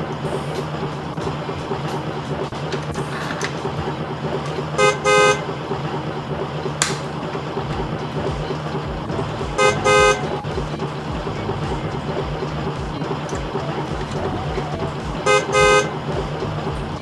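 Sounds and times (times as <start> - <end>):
steady low hum: 0.0 - 17.0
toy car electronic horn: 4.4 - 5.8, 8.1 - 17.0
sharp click: 6.8 - 7.4.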